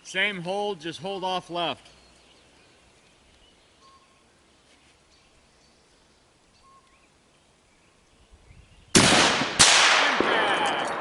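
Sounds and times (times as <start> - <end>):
bird chirps and whistles: 6.6 - 7.0.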